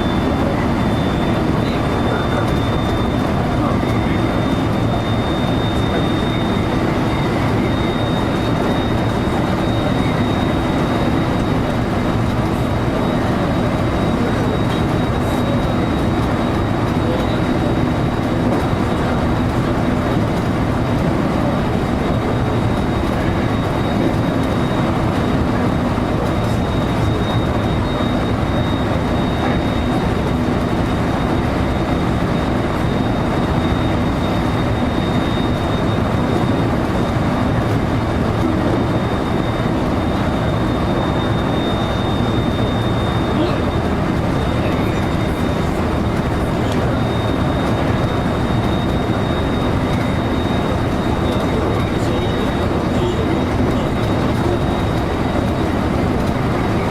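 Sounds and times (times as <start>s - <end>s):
train wheel and rail rumble: 0.0s - 56.9s
thin high whine: 21.4s - 56.9s.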